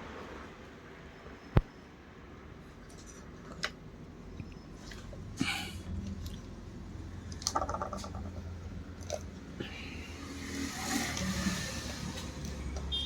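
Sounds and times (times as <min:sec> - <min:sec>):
hiss: 0:10.0 - 0:12.5.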